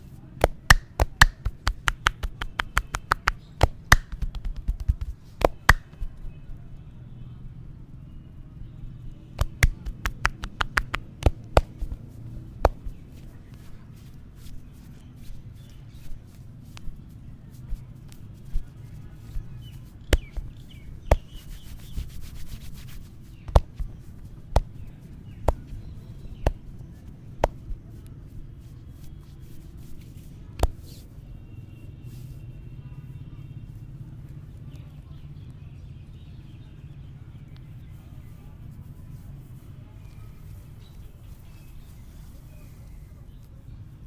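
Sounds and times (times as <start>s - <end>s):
hands slapping on body: 0.3s - 6.2s, 9.4s - 31.0s
quick taps: 0.4s - 6.2s, 9.4s - 28.1s, 29.0s - 31.0s
birds chirping: 6.0s - 29.8s, 39.8s - 44.0s.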